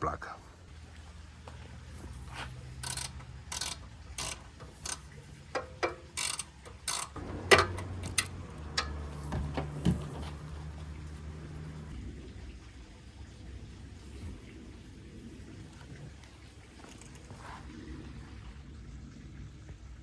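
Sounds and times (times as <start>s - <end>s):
ratchet wrench clicking: 1.9s - 10.5s.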